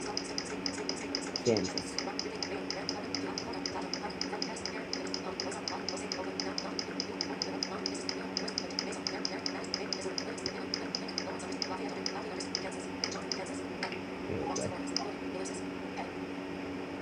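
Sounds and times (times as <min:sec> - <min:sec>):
fast even ticking: 0:00.0 - 0:13.6
steady low hum: 0:00.0 - 0:17.0.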